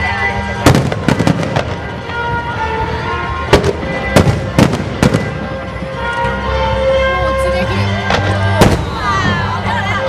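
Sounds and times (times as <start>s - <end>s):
fireworks bursting with sharp bangs: 0.0s - 6.2s, 7.9s - 9.6s
background music: 0.0s - 10.0s.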